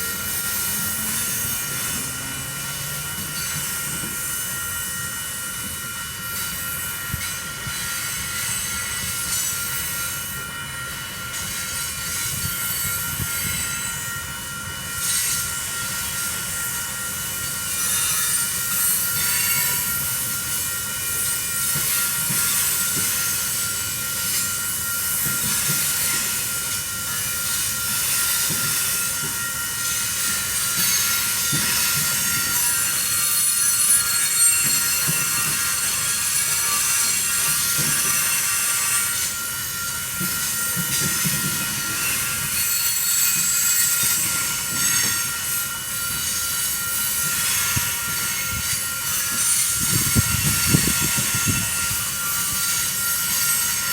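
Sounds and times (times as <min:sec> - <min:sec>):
train wheels rumbling on rails: 0:00.0 - 0:53.9
high squeal of wheels: 0:15.0 - 0:16.6, 0:27.1 - 0:53.9.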